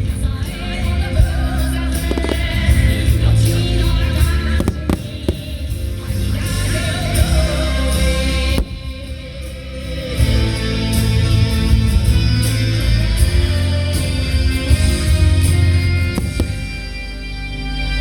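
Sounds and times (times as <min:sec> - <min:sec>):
heavy bass line: 0:00.0 - 0:18.0
rock music with electric guitar: 0:00.0 - 0:18.0.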